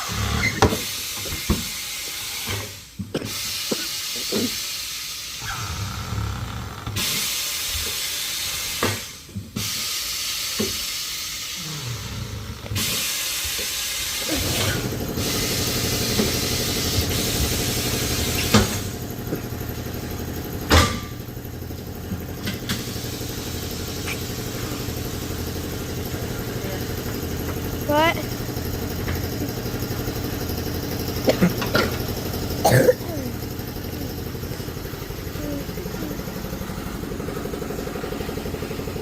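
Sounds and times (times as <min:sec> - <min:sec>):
compressed air hissing: 0:00.8 - 0:05.7, 0:07.0 - 0:19.0, 0:22.4 - 0:25.9
motor humming: 0:14.1 - 0:39.0.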